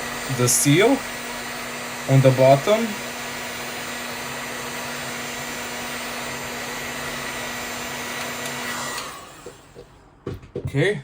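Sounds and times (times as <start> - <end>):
fan winding down: 0.0 - 9.9
hot-air blower whirring: 0.0 - 10.1.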